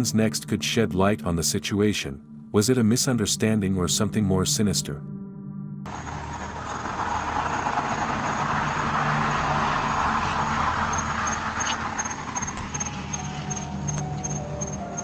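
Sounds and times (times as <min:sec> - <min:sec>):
low musical drone: 0:00.0 - 0:15.0
vehicle passing by: 0:05.9 - 0:15.0.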